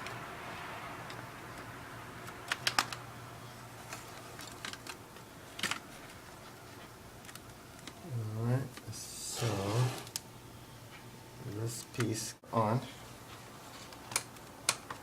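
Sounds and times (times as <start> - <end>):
plastic parts clicking and tapping: 2.5 - 3.0, 3.9 - 5.0.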